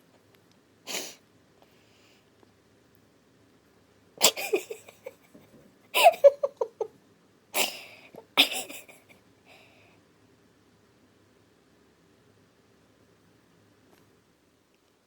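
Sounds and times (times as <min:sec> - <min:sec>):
person sneezing: 0:00.9 - 0:01.2.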